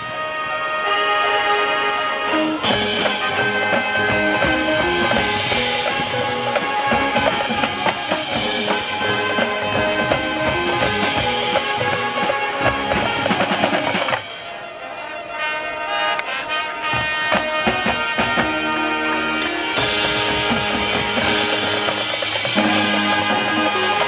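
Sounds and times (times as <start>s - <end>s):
marching band playing: 0.0s - 24.0s.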